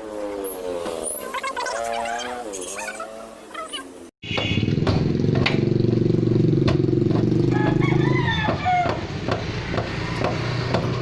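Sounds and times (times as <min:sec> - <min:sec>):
sharp knocks: 0:04.3 - 0:05.8, 0:06.6 - 0:11.0
engine running: 0:04.6 - 0:08.2.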